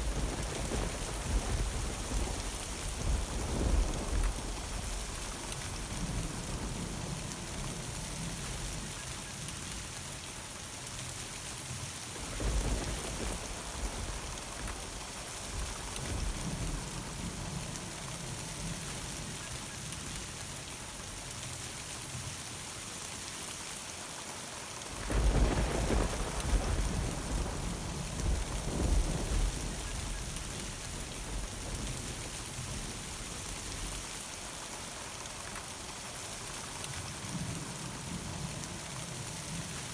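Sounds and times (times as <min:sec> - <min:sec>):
thunder rumbling: 0:00.0 - 0:08.7, 0:12.2 - 0:18.8, 0:25.0 - 0:34.1
steady rain falling: 0:00.0 - 0:39.9.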